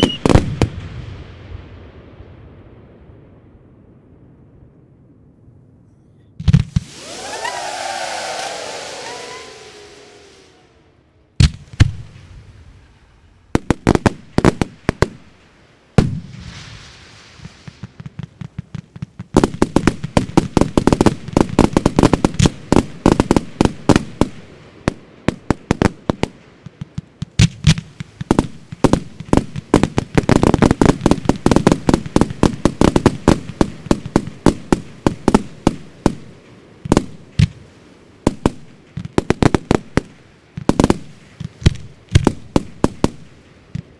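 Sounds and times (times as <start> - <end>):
fireworks bangs: 0.0 - 2.3, 6.4 - 43.9
firework hiss: 6.5 - 13.5, 16.4 - 18.0.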